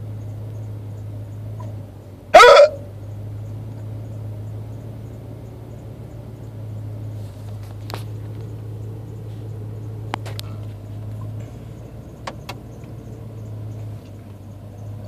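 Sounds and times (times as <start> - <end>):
truck idling hum: 0.0 - 15.0.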